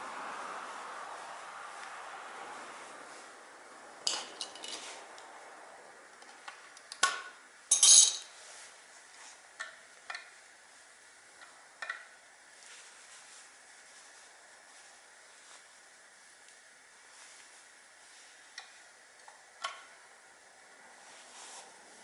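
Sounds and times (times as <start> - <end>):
metal tools clinking: 4.1 - 5.0, 7.7 - 8.3.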